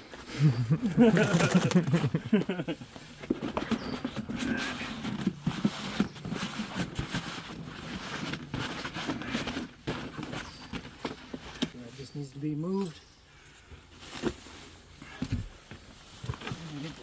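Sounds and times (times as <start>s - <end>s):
gear rustling and knocking: 3.2s - 11.8s.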